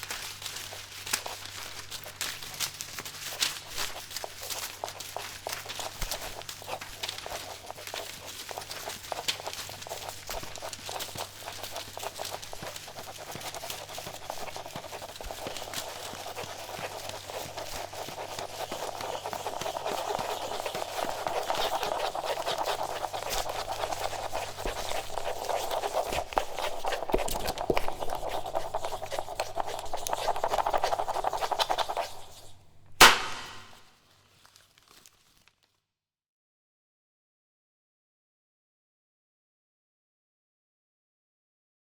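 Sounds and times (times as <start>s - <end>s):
paper crackling and rustling: 0.0s - 35.8s
sharp click: 33.0s - 33.8s.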